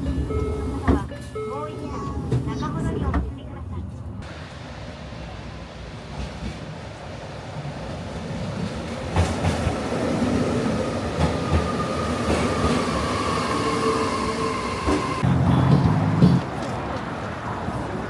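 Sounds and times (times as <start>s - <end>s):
vehicle rumble: 15.2s - 18.0s.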